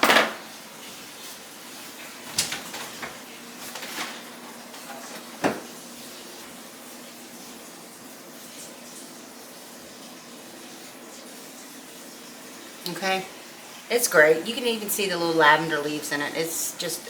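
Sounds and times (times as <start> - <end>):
knocks on kitchen counter: 0.0 - 0.4, 5.4 - 5.7.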